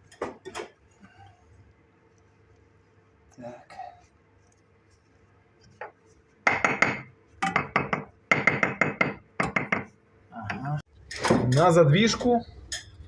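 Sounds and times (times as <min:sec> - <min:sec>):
metal tools knocking on brick: 0:06.5 - 0:09.9.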